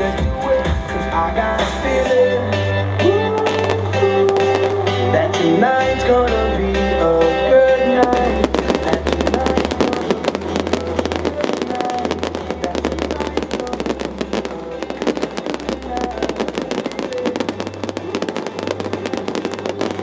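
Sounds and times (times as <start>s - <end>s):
fireworks crackling: 3.2s - 6.4s, 7.8s - 20.0s.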